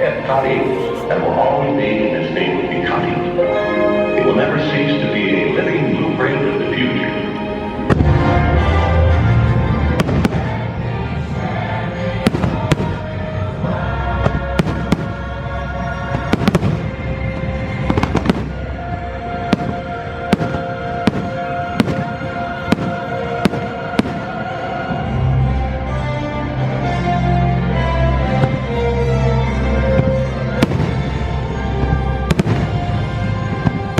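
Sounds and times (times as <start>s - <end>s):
music with long held notes: 0.0s - 33.9s
fireworks bursting with sharp bangs: 7.9s - 8.4s, 9.9s - 10.8s, 12.2s - 13.2s, 14.2s - 15.4s, 16.0s - 25.2s, 28.3s - 28.7s, 29.9s - 33.9s.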